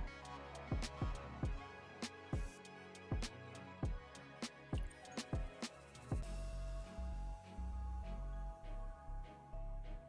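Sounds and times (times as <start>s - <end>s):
bass line: 6.1s - 10.0s.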